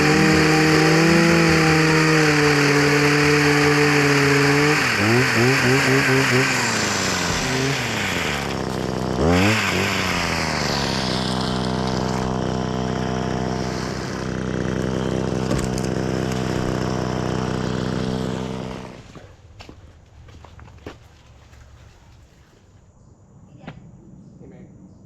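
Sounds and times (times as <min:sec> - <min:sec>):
engine revving and running: 0:00.0 - 0:19.2.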